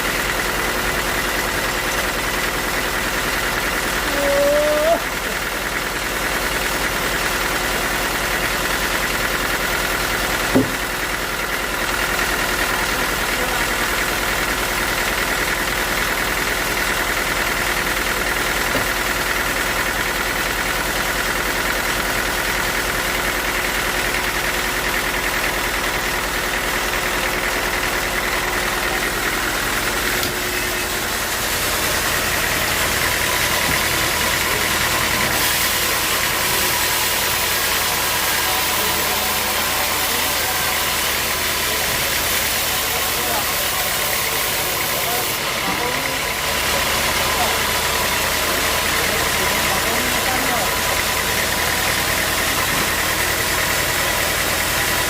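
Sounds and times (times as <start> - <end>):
sawmill machinery running: 0.0 - 55.0
single knock: 10.5 - 10.8.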